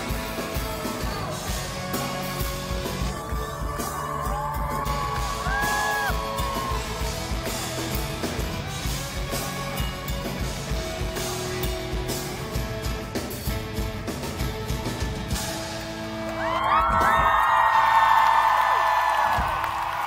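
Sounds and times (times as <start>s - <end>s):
live rock band playing: 0.0s - 17.0s.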